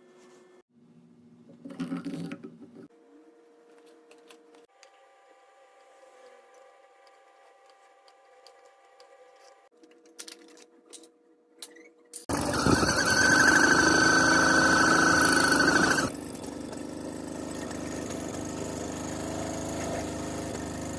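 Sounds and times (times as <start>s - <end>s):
two-stroke moped engine running: 12.3s - 20.9s.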